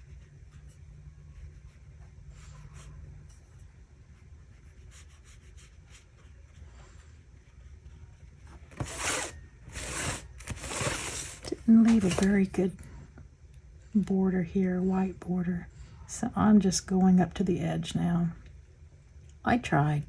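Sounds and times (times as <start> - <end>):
paintbrush strokes on paper: 0.0 - 12.6.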